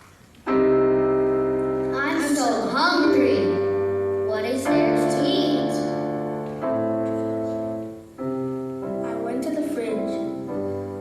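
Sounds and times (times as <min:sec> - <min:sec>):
keyboard playing chords: 0:00.5 - 0:11.0
person speaking: 0:01.9 - 0:06.0, 0:08.9 - 0:10.6.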